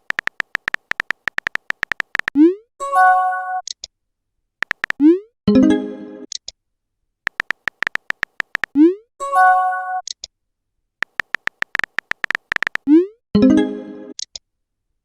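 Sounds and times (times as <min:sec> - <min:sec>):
keyboard tap clicks: 0:00.0 - 0:02.4, 0:04.6 - 0:05.0, 0:07.3 - 0:08.8, 0:11.0 - 0:12.9.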